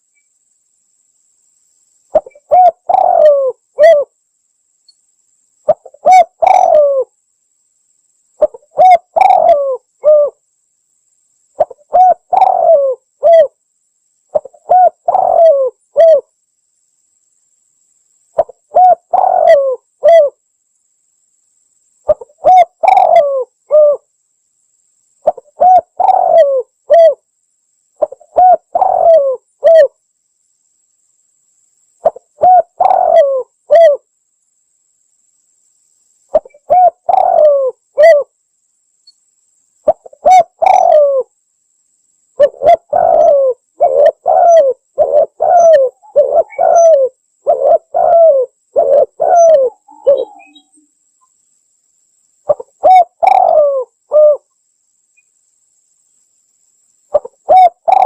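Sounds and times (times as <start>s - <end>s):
dove cooing: 2.1s - 4.1s, 5.7s - 7.1s, 8.4s - 10.4s, 11.6s - 13.6s, 14.3s - 16.3s, 18.4s - 20.4s, 22.1s - 24.0s, 25.2s - 27.2s, 28.0s - 29.9s, 32.0s - 34.0s, 36.3s - 38.3s, 39.9s - 41.3s, 42.4s - 50.7s, 52.5s - 54.5s, 57.1s - 58.0s.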